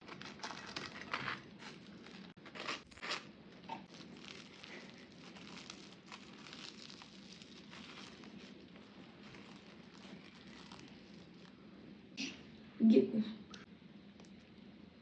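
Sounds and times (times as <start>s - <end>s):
crinkling rustling kitchen handling: 0.0s - 11.6s.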